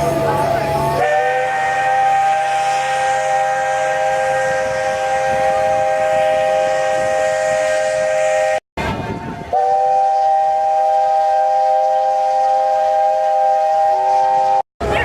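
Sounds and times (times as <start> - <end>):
steam hissing: 0.0 - 8.6
steam whistle blowing: 0.0 - 14.6.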